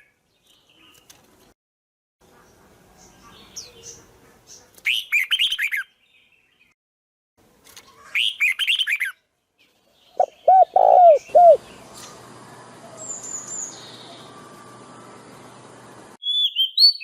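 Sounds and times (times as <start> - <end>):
birds chirping: 2.4 - 6.8, 9.6 - 17.0
lower arched bird calls: 10.1 - 11.7.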